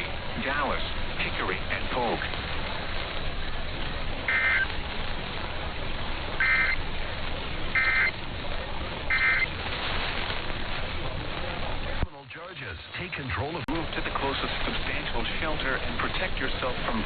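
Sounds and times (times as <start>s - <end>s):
radio static: 0.0s - 17.0s
buzzy two-tone data bursts: 4.2s - 4.7s, 6.4s - 6.8s, 7.7s - 8.2s, 9.1s - 9.5s.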